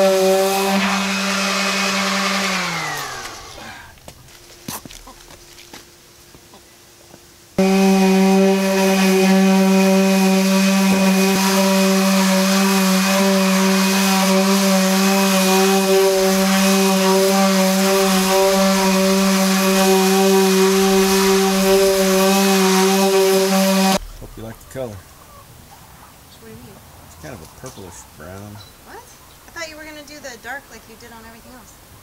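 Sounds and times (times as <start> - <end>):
power sander on wood: 0.0 - 3.9, 7.6 - 24.0.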